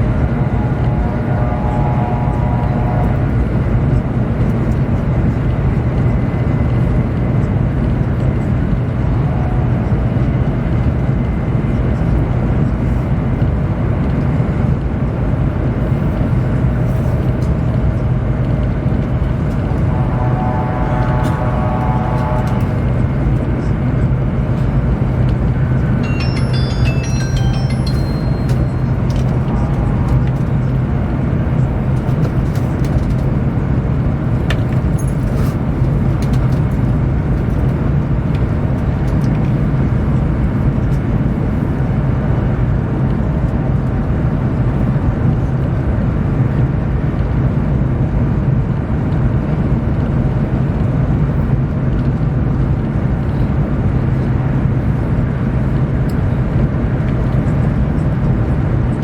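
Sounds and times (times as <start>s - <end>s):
low hum: 0.0s - 5.4s, 7.7s - 11.8s, 17.0s - 33.3s
train cabin rumble and rush: 0.0s - 59.0s.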